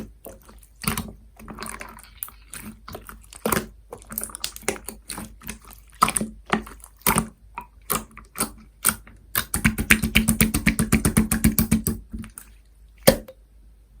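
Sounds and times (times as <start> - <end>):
slime squished with clicky pops: 3.4 - 12.4, 13.0 - 13.4.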